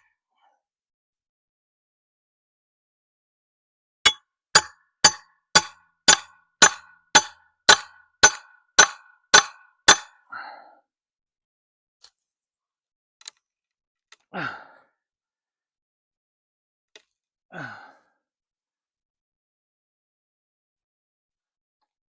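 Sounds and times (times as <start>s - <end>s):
hammer striking metal: 4.1s - 10.1s.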